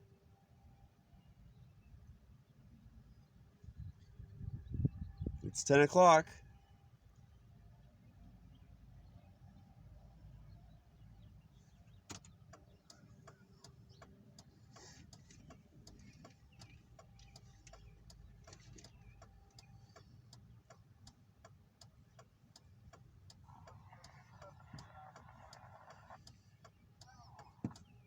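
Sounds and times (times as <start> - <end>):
faint steady ticking: 11.7 - 28.0.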